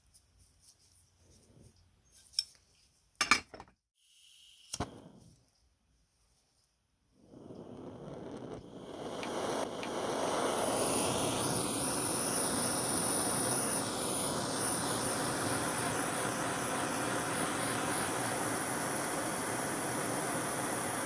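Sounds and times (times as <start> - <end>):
power tool whining and rushing: 7.3 - 21.0.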